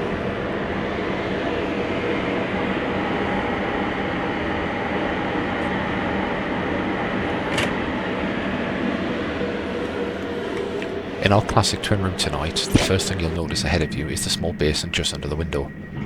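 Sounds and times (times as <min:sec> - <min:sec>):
train carriage rumble and hum: 0:09.6 - 0:16.0
sharp click: 0:12.7 - 0:13.3.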